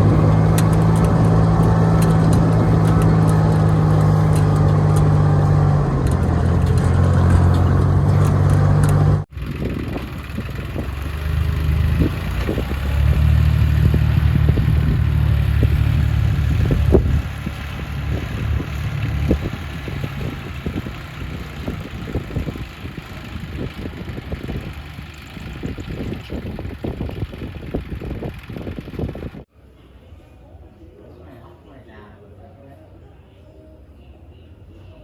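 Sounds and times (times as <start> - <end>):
engine running: 0.0 - 29.4.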